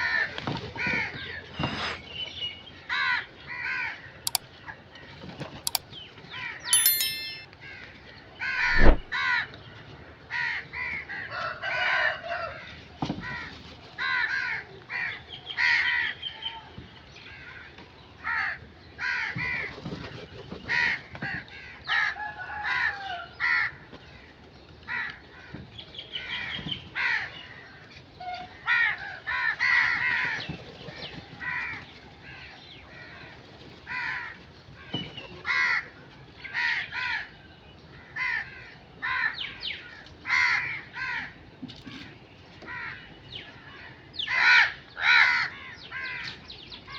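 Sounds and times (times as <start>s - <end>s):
sharp thump: 8.6s - 9.1s
crows cawing: 40.3s - 41.4s.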